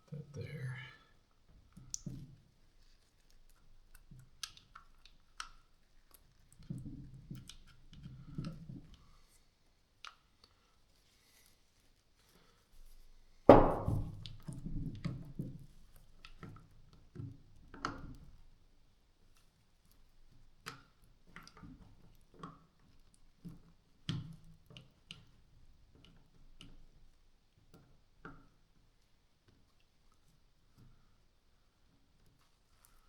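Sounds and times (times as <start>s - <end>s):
loud thunk: 13.5s - 14.1s.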